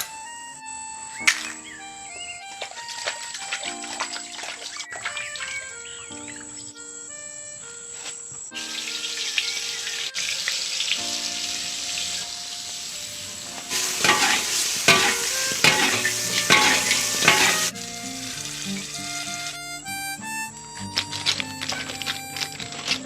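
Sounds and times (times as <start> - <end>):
food sizzling in a hot pan: 8.6 - 19.5.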